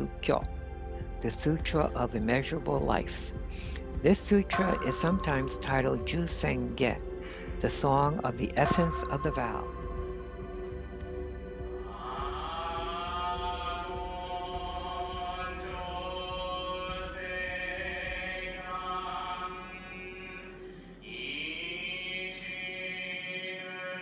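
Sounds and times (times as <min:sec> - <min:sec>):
steady background drone: 0:00.0 - 0:23.4
chanting: 0:01.2 - 0:24.0.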